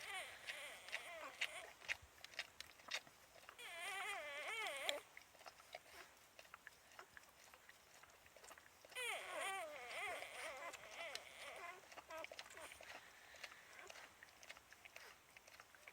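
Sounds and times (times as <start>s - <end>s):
puppy whining: 0.0s - 1.9s, 3.4s - 5.1s, 7.9s - 15.9s
puppy chewing and crunching: 0.0s - 15.9s.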